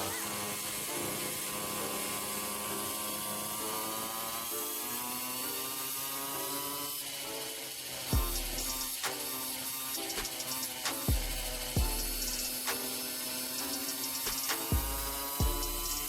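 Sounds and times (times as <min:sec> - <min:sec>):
small motorbike engine buzzing: 0:00.0 - 0:16.0.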